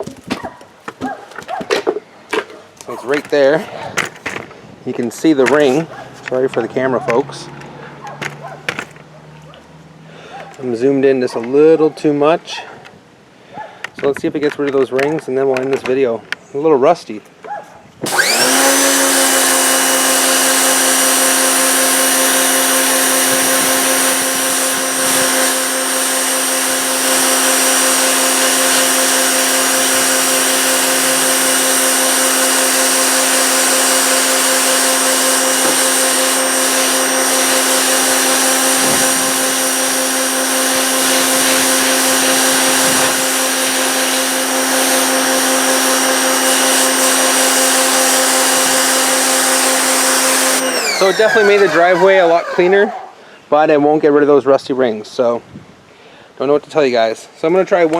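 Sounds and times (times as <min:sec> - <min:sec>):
pressure washer motor whine: 0:18.0 - 0:52.9
water jet hissing on concrete: 0:18.0 - 0:52.9.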